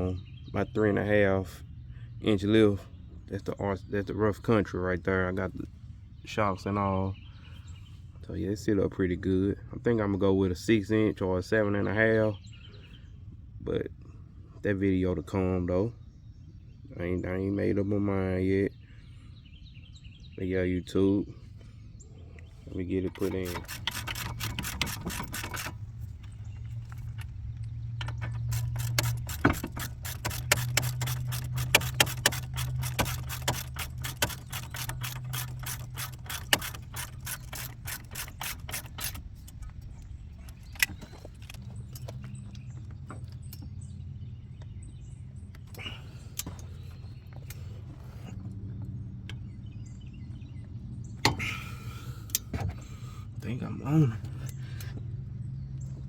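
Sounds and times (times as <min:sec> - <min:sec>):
steady low hum: 0:21.1 - 0:56.0
hand ratchet clicking: 0:23.1 - 0:39.8.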